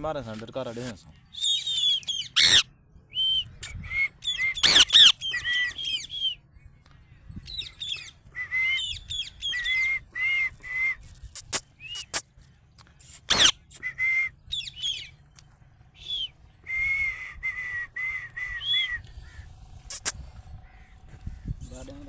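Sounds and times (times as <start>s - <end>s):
parrot whistled chirps: 1.4s - 6.4s, 13.3s - 15.1s.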